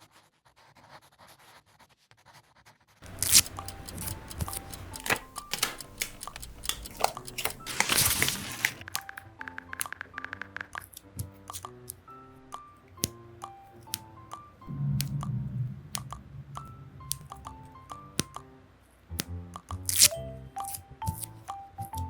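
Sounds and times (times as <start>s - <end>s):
paper rustling: 3.0s - 8.8s
stickers peeling off: 3.0s - 9.1s, 19.1s - 20.1s
soft background music: 3.0s - 22.0s.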